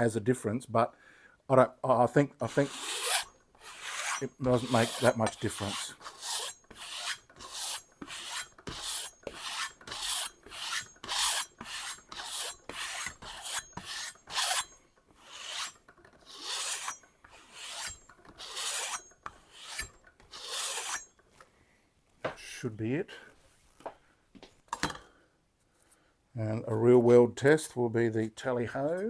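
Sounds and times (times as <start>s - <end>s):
knife scraping on leather strop: 2.5s - 21.1s.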